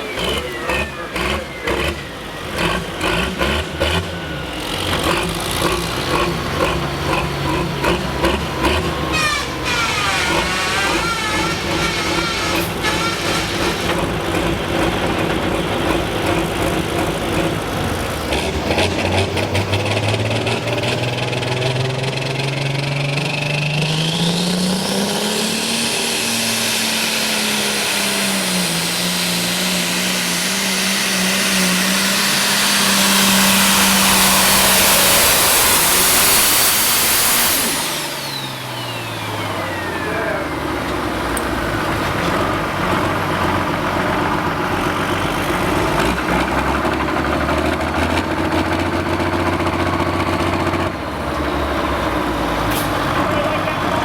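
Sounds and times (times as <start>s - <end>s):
tractor engine revving: 0.0s - 54.0s
loud rushing hiss: 9.0s - 14.4s, 24.3s - 41.2s
high whistle: 9.1s - 13.9s, 27.1s - 40.4s.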